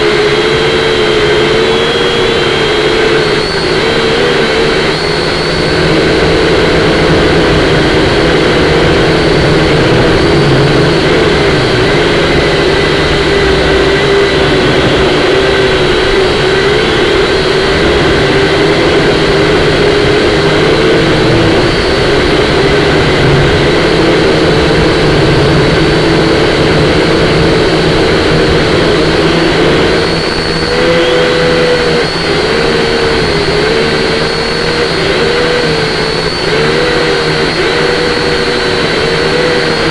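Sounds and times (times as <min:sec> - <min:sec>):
quadcopter propellers whining: 0:00.0 - 0:39.9
wind rushing: 0:05.8 - 0:28.3.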